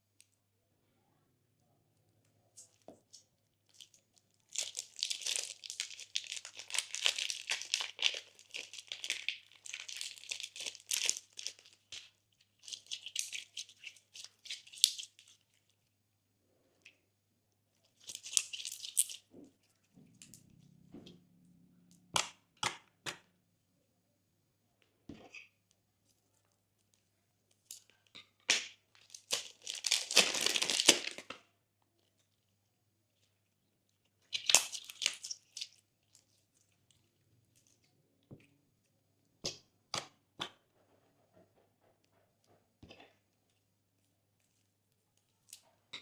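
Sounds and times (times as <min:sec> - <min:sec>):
slime popping crackly: 0:03.7 - 0:15.1, 0:28.5 - 0:31.4, 0:34.3 - 0:35.7.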